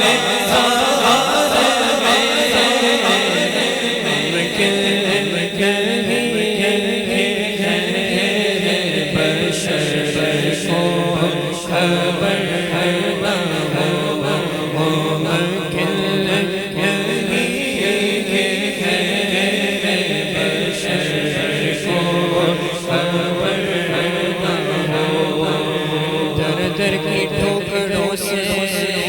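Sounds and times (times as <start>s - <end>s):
voices chanting a melody: 0.0s - 27.6s.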